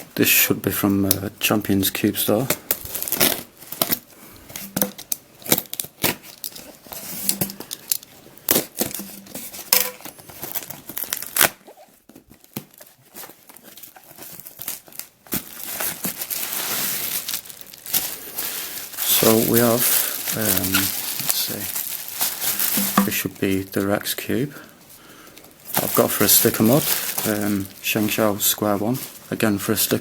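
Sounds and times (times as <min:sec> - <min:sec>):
packaging crinkling and tearing: 0:02.4 - 0:24.1, 0:25.4 - 0:30.0.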